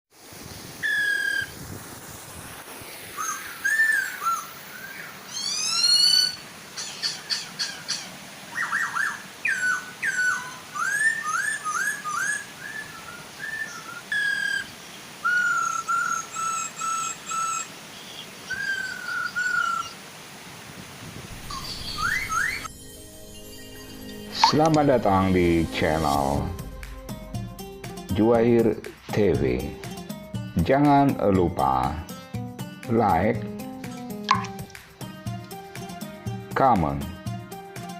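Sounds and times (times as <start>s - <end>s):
birds singing clear whistles: 0.8s - 1.6s, 3.1s - 20.0s, 21.3s - 22.7s.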